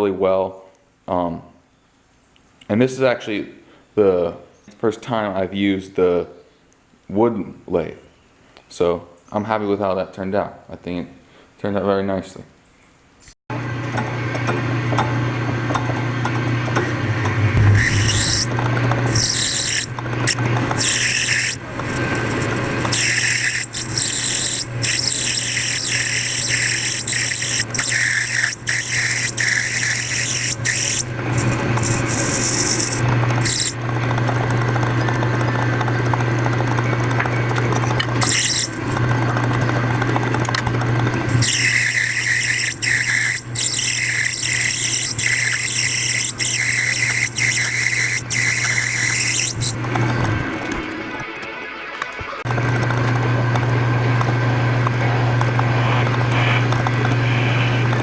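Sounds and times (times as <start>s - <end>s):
lathe motor humming: 16.4s - 50.8s
cutting tool scraping and squealing: 16.8s - 33.8s, 37.5s - 39.0s, 41.3s - 50.5s.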